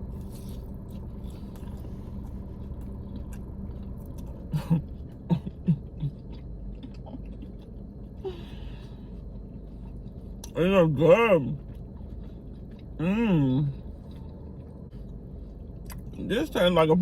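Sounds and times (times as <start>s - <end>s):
person chewing crispy food: 0.0s - 16.2s.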